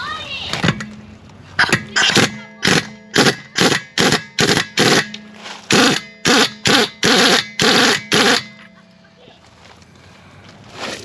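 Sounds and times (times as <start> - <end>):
impact wrench rattling: 1.6 - 8.7.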